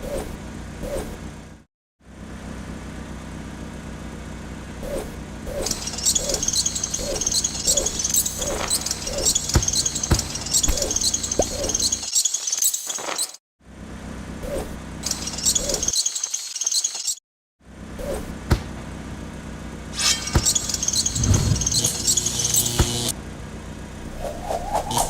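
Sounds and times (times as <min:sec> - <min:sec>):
low engine hum: 0:21.0 - 0:25.0.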